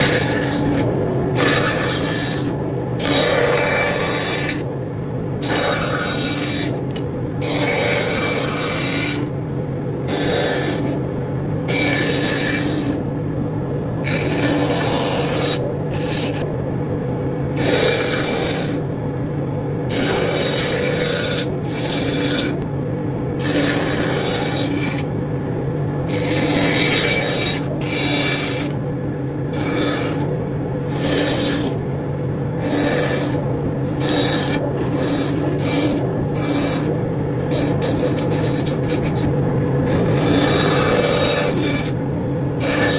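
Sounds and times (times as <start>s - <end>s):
rasping strokes on wood: 0.0s - 4.7s, 5.4s - 9.3s, 10.0s - 11.0s, 11.7s - 13.1s, 14.0s - 16.5s, 17.6s - 18.9s, 19.9s - 22.6s, 23.4s - 25.1s, 26.0s - 28.8s, 29.5s - 30.3s, 30.9s - 31.8s, 32.6s - 39.3s, 39.9s - 42.0s, 42.6s - 42.9s
low machine hum: 0.0s - 42.9s.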